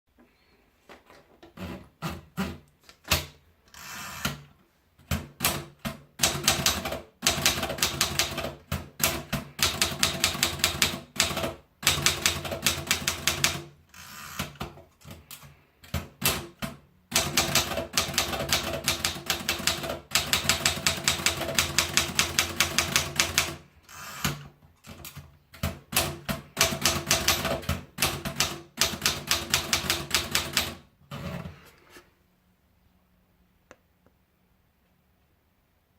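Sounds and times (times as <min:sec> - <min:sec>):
typewriter keystrokes: 0:05.1 - 0:13.7, 0:14.4 - 0:23.6, 0:24.2 - 0:30.8.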